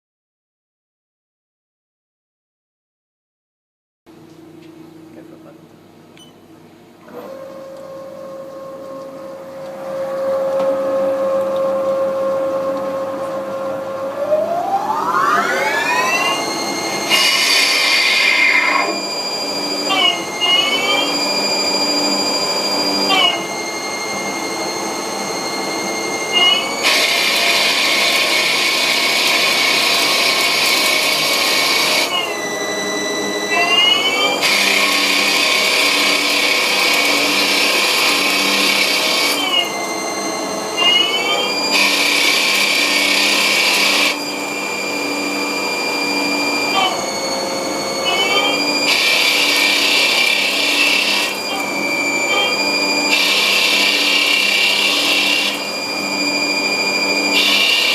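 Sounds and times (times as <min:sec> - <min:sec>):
lathe spindle whining: 0:07.0 - 0:57.9
hissing cutting noise: 0:14.1 - 0:22.2, 0:40.8 - 0:57.9.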